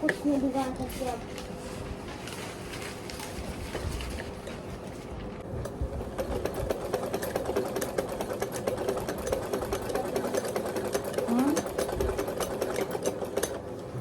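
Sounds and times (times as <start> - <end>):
sewing machine stitching: 5.7 - 14.0.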